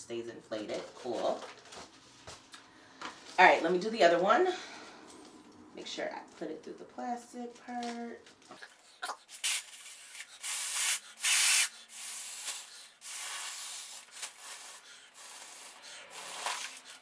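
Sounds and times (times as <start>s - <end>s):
breathy puffs through a straw: 8.6s - 17.0s
foil balloon rustling: 8.6s - 17.0s.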